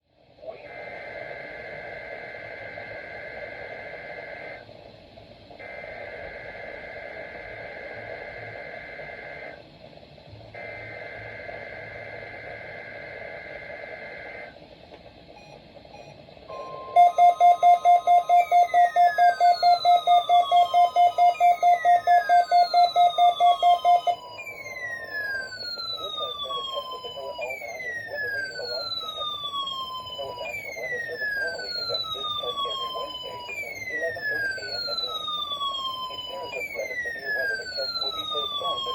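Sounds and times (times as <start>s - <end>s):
fast pulsing beep: 15.4s - 24.6s
steady attention tone: 15.4s - 29.3s
falling siren-like sweeps: 16.5s - 38.9s.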